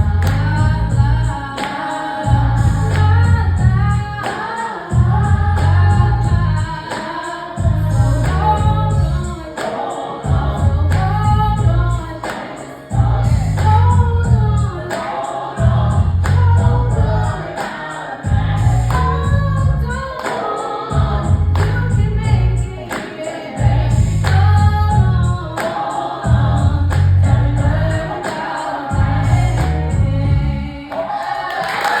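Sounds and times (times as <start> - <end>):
choir singing: 0.0 - 32.0
gospel backing track with bass: 0.0 - 32.0
woman singing: 0.0 - 32.0.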